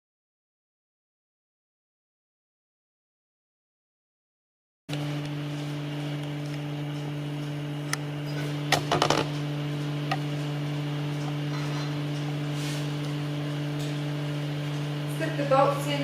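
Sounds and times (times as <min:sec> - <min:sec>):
steady low hum: 0:04.9 - 0:16.0.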